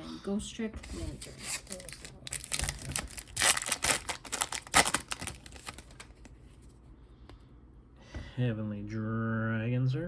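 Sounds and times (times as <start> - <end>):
cards and foil wrapper rustling: 0.8 - 6.4.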